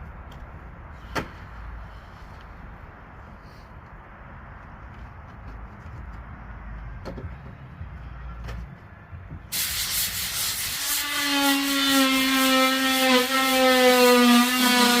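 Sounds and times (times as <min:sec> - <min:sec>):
power sander grinding: 0:10.8 - 0:15.0.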